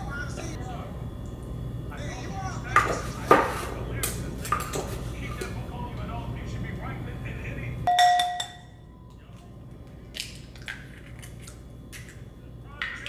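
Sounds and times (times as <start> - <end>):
low hum: 0.0 - 13.0
dishes clicking and tapping: 2.7 - 5.7, 7.9 - 8.8, 12.8 - 13.0
ringing clink of dishware: 7.9 - 8.8.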